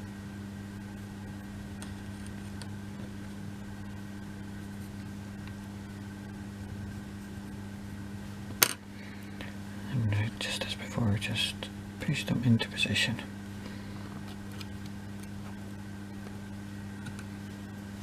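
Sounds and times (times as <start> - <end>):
low electrical hum: 0.0 - 18.0.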